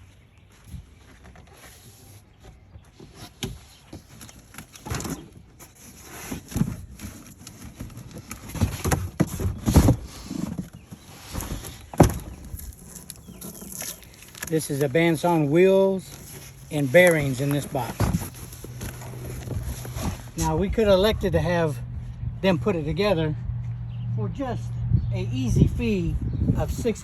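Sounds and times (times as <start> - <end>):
cardboard box ripping and scraping: 5.6 - 14.6, 15.2 - 20.5.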